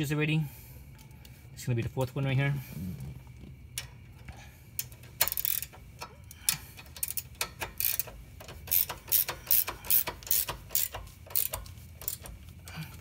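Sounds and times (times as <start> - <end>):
ratcheting wrench clicking: 3.7 - 13.0.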